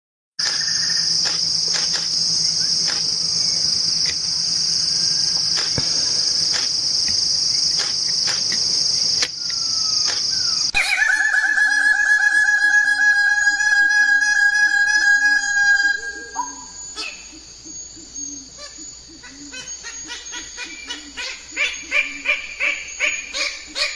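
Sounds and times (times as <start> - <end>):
rooster crowing: 0.4 - 1.2, 10.7 - 16.6
shrill insect drone: 0.4 - 23.9.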